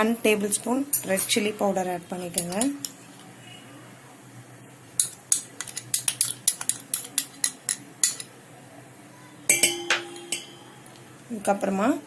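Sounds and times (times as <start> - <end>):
spoon clinking against bowl: 9.5 - 10.7.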